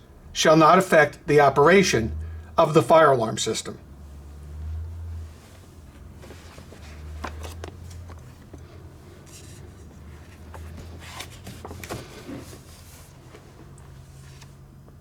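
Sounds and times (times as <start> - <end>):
low hum: 1.2 - 2.8
faint rustling and clicking: 5.4 - 15.0.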